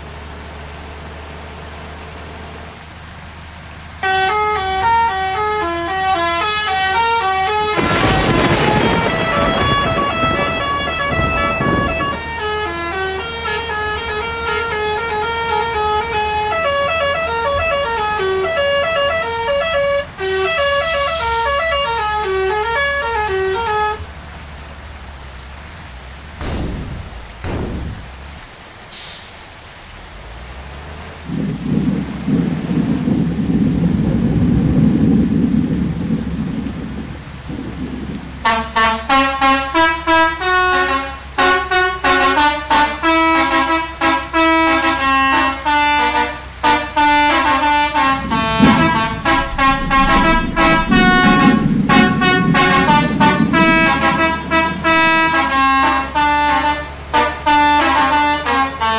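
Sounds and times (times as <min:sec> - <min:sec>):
musical bus air horn tune: 0:04.0 - 0:24.1, 0:38.4 - 0:58.9
rushing noise: 0:25.2 - 0:31.3, 0:47.0 - 0:55.7.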